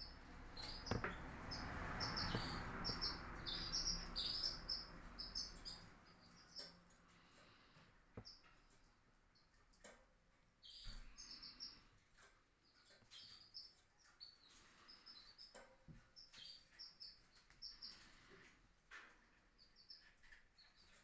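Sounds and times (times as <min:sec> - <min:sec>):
canaries chirping: 0:00.0 - 0:10.0, 0:10.6 - 0:21.0
soft knocks: 0:00.9 - 0:01.3.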